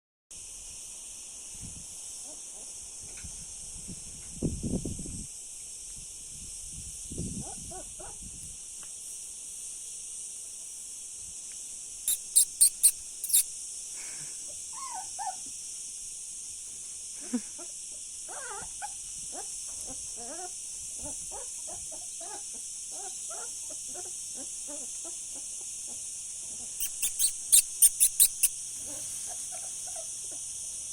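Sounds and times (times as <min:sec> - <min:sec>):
steady high hiss: 0:00.3 - 0:07.2, 0:08.4 - 0:19.8, 0:22.4 - 0:30.9
dog whimpering: 0:18.3 - 0:18.7, 0:26.8 - 0:28.5
sharp high-pitched sounds: 0:26.8 - 0:28.5.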